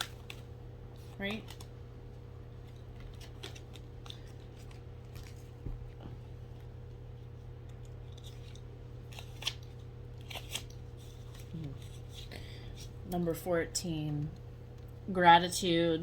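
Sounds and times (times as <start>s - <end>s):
cards being shuffled: 0.0s - 1.8s, 2.4s - 13.0s
low electrical hum: 0.0s - 16.0s.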